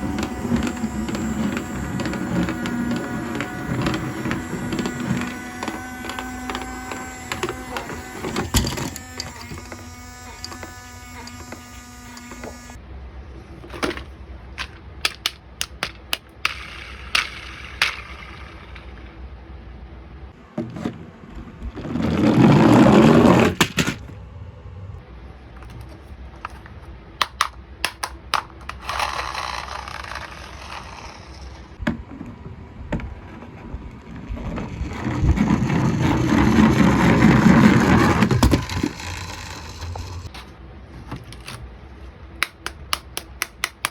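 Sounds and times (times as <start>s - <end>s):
packaging noise: 0.0s - 12.8s, 33.6s - 40.5s
plastic clicks and taps: 14.6s - 16.6s, 27.2s - 28.8s, 42.4s - 43.9s.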